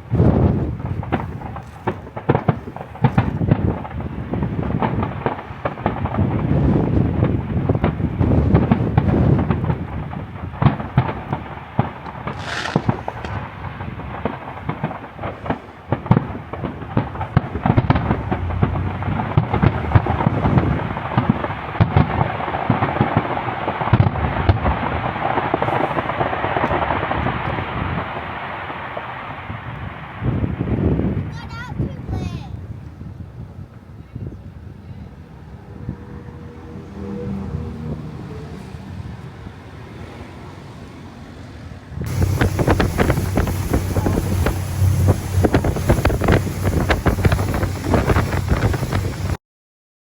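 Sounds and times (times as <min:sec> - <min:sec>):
fireworks bangs and crackling: 0:00.0 - 0:33.4, 0:42.0 - 0:49.4
deep rumble: 0:17.2 - 0:21.6, 0:42.1 - 0:49.4
high-pitched hiss: 0:42.1 - 0:49.4.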